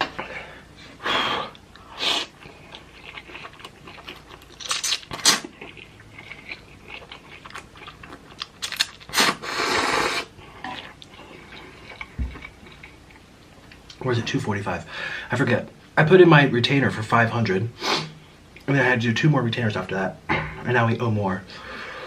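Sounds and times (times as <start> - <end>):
chewing noodles: 1.5 - 14.0
noodle slurps: 9.1 - 10.3.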